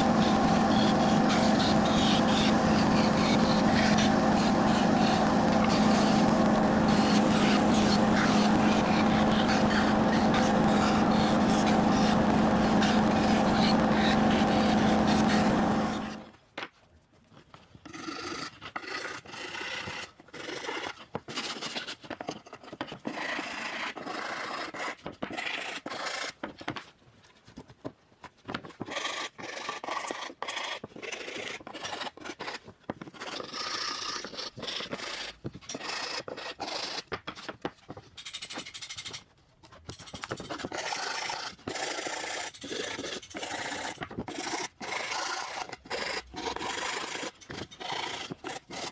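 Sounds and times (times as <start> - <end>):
motor hum: 0.0 - 16.3.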